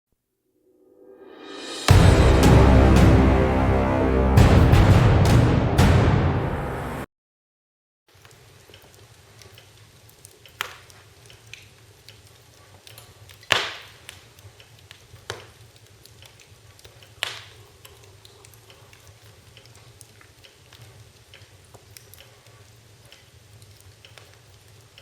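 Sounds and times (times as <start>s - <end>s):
wood fire crackling: 8.1s - 25.0s.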